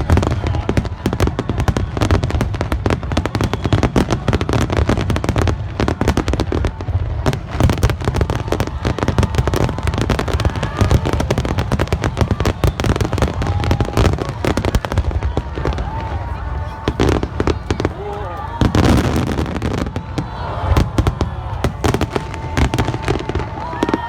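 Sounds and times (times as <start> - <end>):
fireworks bursting: 0.0 - 24.0
fireworks crackle: 0.0 - 24.0.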